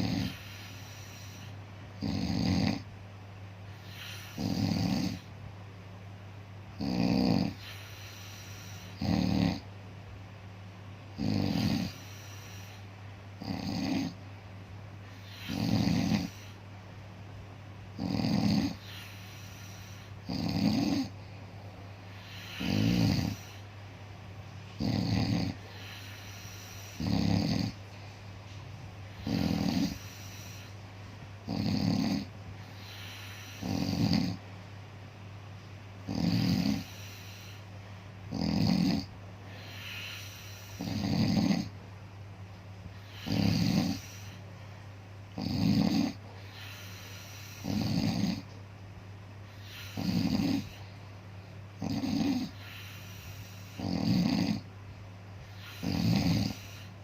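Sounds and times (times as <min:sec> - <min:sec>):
rhythmic snoring: 0:00.0 - 0:02.9, 0:03.7 - 0:05.4, 0:06.7 - 0:09.8, 0:11.1 - 0:14.3, 0:15.0 - 0:16.6, 0:17.9 - 0:23.8, 0:24.7 - 0:27.9, 0:28.5 - 0:34.5, 0:36.0 - 0:41.8, 0:42.8 - 0:44.5, 0:45.3 - 0:48.6, 0:49.4 - 0:51.1, 0:51.7 - 0:54.7, 0:55.4 - 0:57.0
constant low hum: 0:00.0 - 0:57.0.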